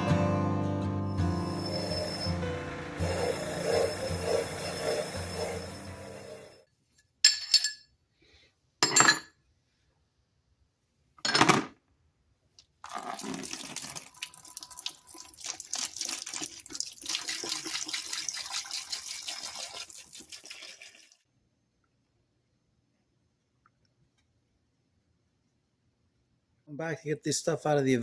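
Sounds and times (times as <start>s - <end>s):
liquid running and splashing: 3.0s - 6.5s, 12.8s - 21.2s.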